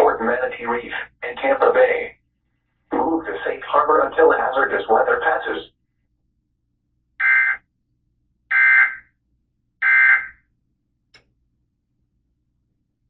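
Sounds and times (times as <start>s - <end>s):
faint click: 11.1s - 11.4s.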